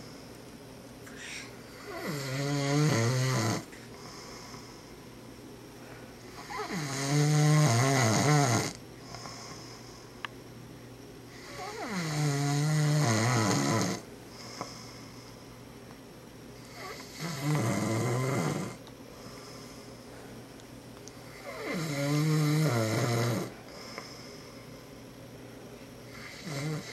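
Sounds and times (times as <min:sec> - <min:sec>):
soft breathing: 0:01.0 - 0:02.1, 0:03.7 - 0:06.5, 0:09.0 - 0:10.3, 0:14.2 - 0:15.7, 0:19.1 - 0:20.6, 0:23.5 - 0:25.2
man snoring: 0:01.7 - 0:04.6, 0:06.3 - 0:09.7, 0:11.3 - 0:15.0, 0:16.6 - 0:18.8, 0:21.3 - 0:24.3, 0:26.1 - 0:26.9.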